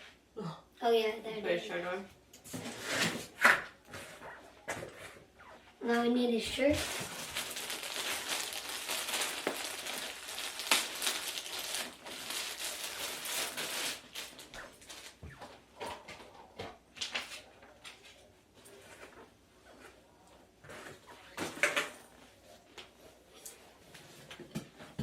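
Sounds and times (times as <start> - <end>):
fabric rustling and crinkling: 6.5 - 15.2.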